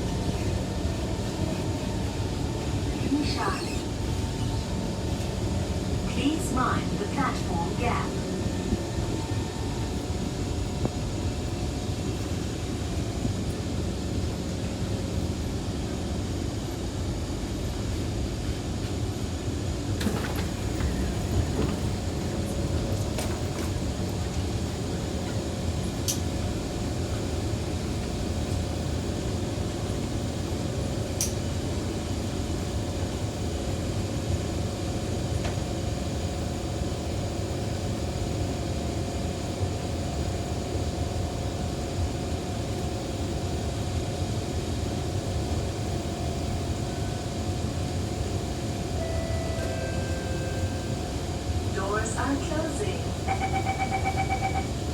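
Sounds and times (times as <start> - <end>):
train air-conditioning hum: 0.0 - 54.9.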